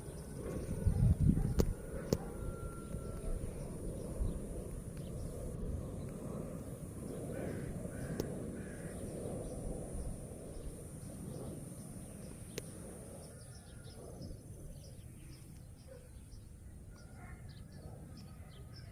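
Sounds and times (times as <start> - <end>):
low rumbling noise: 0.0 - 15.5
crows cawing: 7.3 - 9.0.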